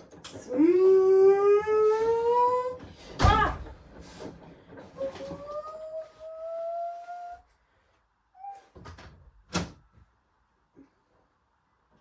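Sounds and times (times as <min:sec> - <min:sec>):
washing machine motor whine: 0:00.0 - 0:07.5.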